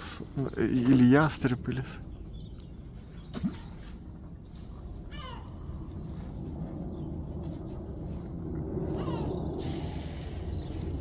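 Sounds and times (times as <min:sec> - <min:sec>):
bird of prey mewing call: 0:05.1 - 0:05.8.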